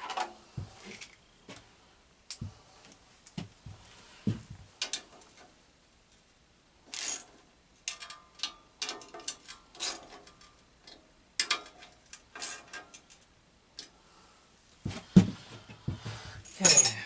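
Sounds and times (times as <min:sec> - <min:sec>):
metal parts clicking and clanking: 0:04.8 - 0:05.5, 0:06.9 - 0:13.9, 0:16.4 - 0:17.0.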